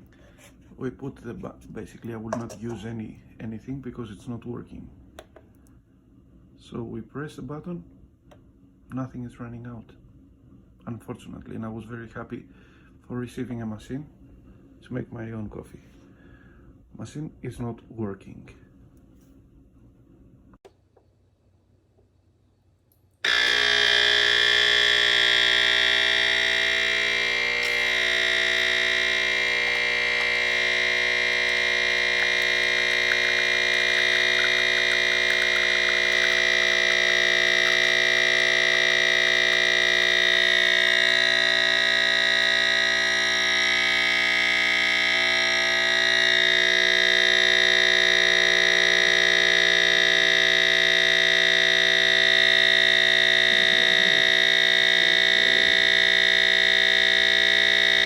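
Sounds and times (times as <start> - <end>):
synthesizer drone: 23.3 - 58.0.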